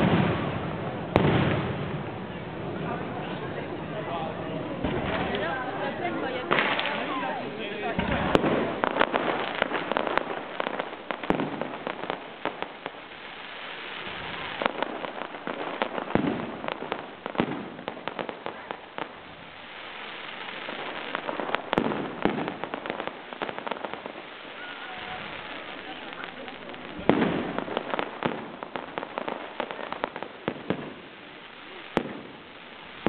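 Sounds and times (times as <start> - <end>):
fireworks bangs and crackling pops: 0.0 - 33.0.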